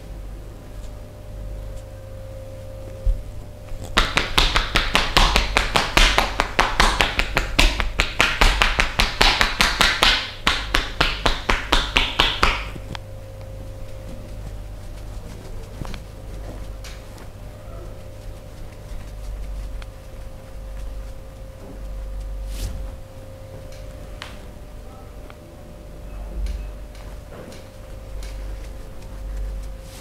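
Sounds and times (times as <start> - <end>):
hands slapping on body: 3.8 - 12.8.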